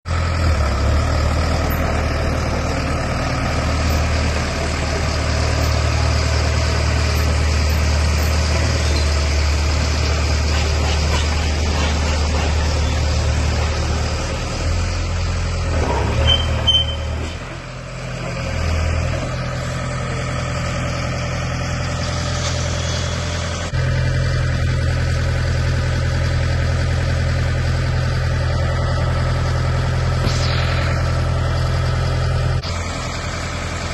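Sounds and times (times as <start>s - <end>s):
drilling rig engine humming: 0.1s - 33.9s.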